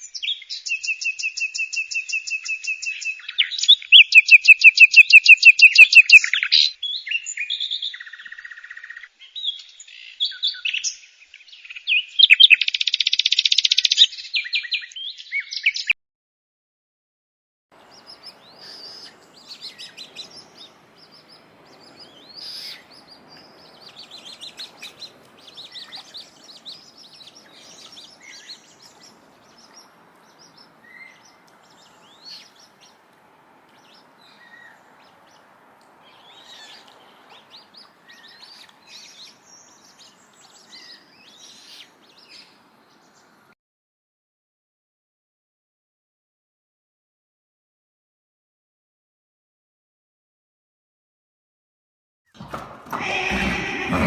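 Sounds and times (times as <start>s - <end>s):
songbirds singing and chirping: 0.0s - 16.0s, 17.8s - 43.6s
steady background hiss: 17.8s - 43.5s.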